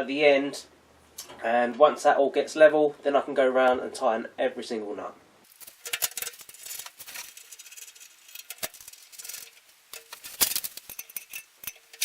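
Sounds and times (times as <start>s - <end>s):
metal parts clinking and rattling: 5.5s - 12.0s.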